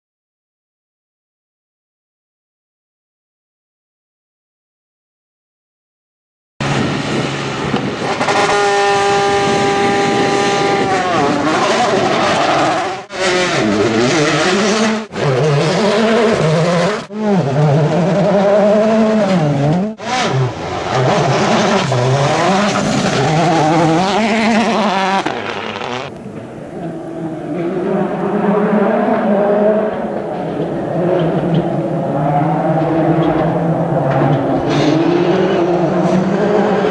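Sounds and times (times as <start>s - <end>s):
rally car engine revving: 6.6s - 36.9s.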